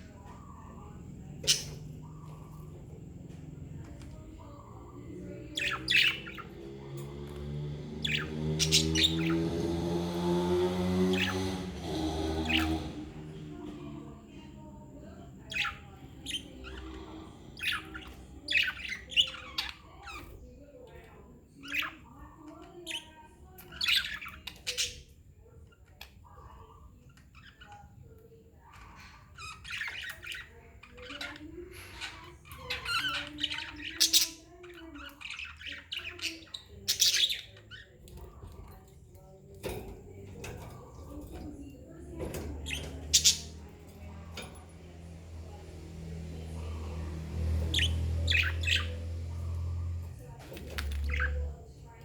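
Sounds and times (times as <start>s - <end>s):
budgerigars chirping and squawking: 0.0s - 52.0s
budgerigars squawking: 42.6s - 44.2s, 44.8s - 50.1s.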